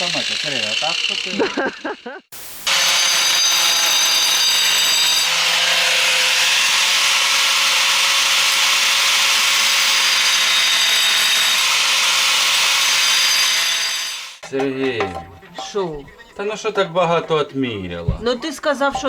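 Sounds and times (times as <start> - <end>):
power cutter grinding tile: 0.0 - 2.0, 2.7 - 14.4.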